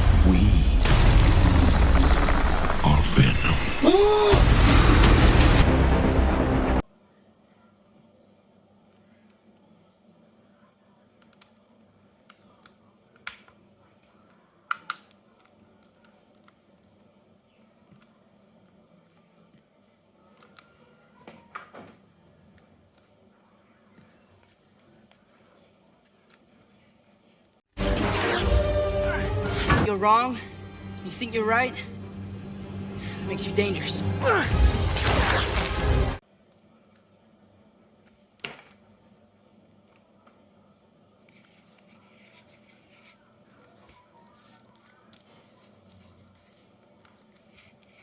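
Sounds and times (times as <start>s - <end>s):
faint clicks and rustles: 15.0s - 27.7s.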